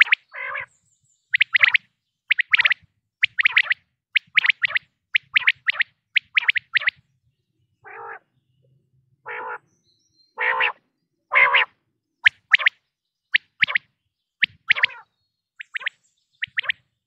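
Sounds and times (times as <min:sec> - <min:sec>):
quail calling: 0:00.0 - 0:00.7, 0:01.4 - 0:07.0, 0:07.8 - 0:08.3, 0:09.3 - 0:09.6, 0:10.4 - 0:12.8, 0:13.4 - 0:15.0.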